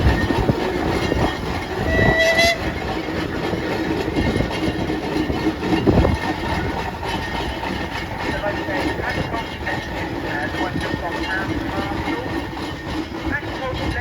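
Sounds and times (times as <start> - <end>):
steam engines rumbling: 0.0 - 14.0
steam whistle toot: 1.8 - 2.7.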